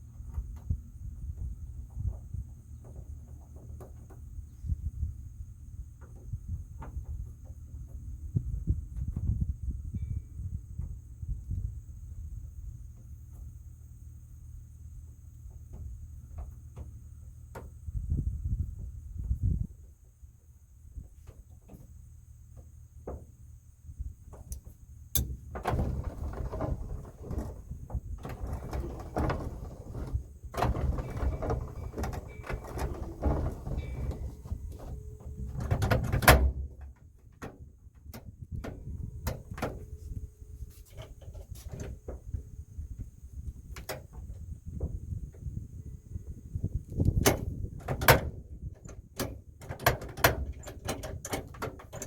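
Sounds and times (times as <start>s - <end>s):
rustling and scraping: 24.2s - 45.5s
clicks and knocks: 24.3s - 39.9s.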